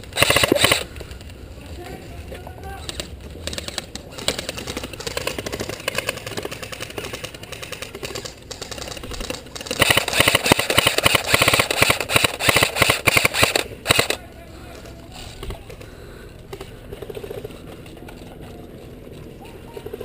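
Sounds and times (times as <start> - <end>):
airsoft guns firing bursts: 0.0 - 1.0, 2.7 - 14.2.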